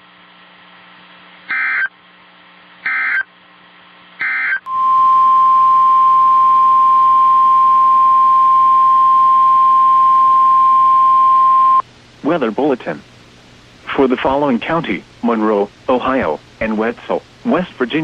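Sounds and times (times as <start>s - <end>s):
steady single-pitch alarm tone: 4.2s - 11.8s.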